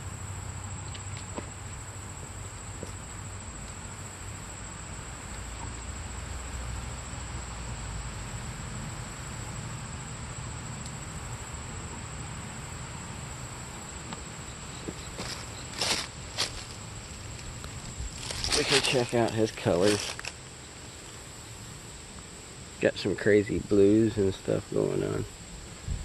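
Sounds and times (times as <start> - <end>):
background hiss: 0.0 - 26.0
insects droning: 0.0 - 26.0.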